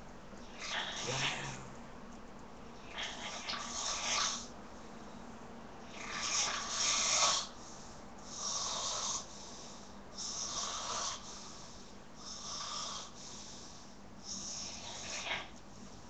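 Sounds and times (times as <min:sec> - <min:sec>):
man snoring: 0:01.0 - 0:01.8.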